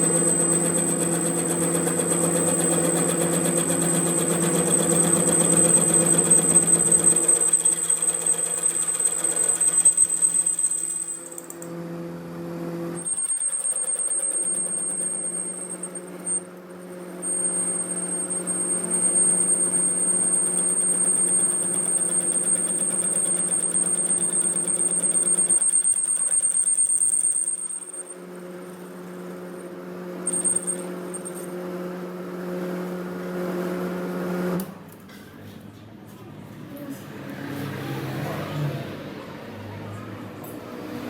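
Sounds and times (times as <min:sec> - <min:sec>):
high-pitched cutting whine: 0:00.0 - 0:12.0, 0:13.0 - 0:31.6
metal lathe humming: 0:00.0 - 0:12.0.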